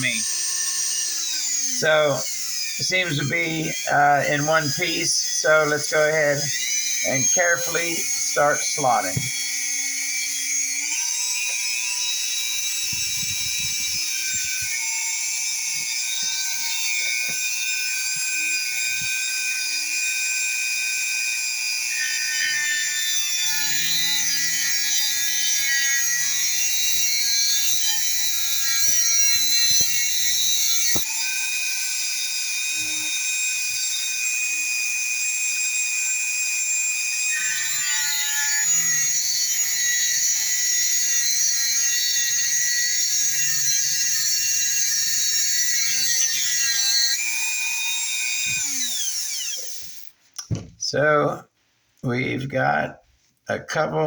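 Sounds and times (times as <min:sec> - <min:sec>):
rotary tool cutting metal: 0:00.0 - 0:50.2.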